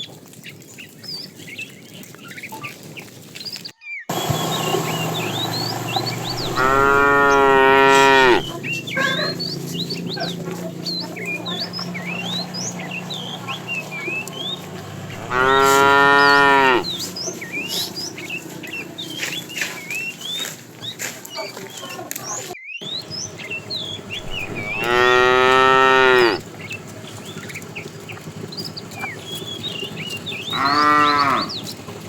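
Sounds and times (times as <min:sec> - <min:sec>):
high chirping: 0:04.1 - 0:18.4, 0:22.8 - 0:26.4
cows mooing: 0:04.4 - 0:09.4, 0:10.2 - 0:17.0, 0:24.1 - 0:26.4, 0:30.4 - 0:31.7.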